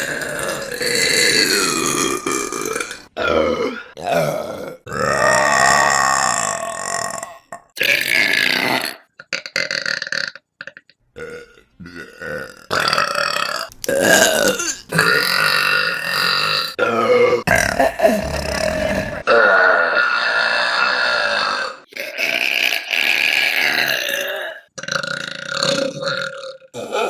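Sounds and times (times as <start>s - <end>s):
women burping: 10.7s - 22.7s, 25.8s - 27.0s.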